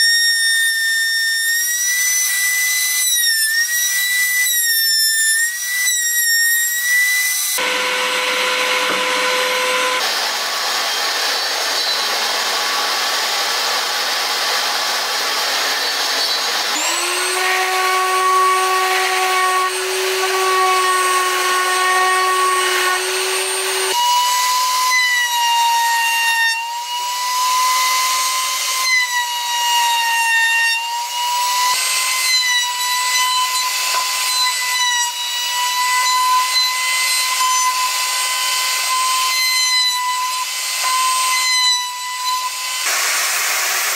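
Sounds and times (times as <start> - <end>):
power tool motor whine: 7.5 - 24.0, 40.4 - 43.9.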